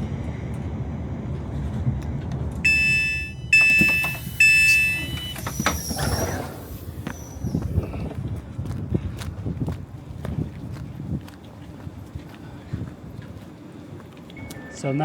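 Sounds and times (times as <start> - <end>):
electronic chime tones: 2.7 - 5.4, 14.4 - 15.0
high squeal: 3.2 - 8.0.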